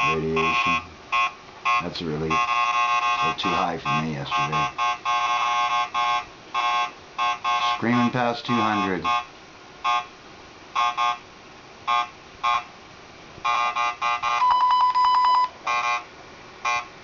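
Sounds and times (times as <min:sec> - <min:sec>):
geiger counter beeping: 0:00.0 - 0:10.1, 0:10.8 - 0:11.2, 0:13.5 - 0:16.0, 0:16.6 - 0:16.9
long steady beep: 0:00.0 - 0:10.1, 0:10.8 - 0:11.2, 0:11.9 - 0:12.7, 0:13.5 - 0:16.0, 0:16.6 - 0:16.9.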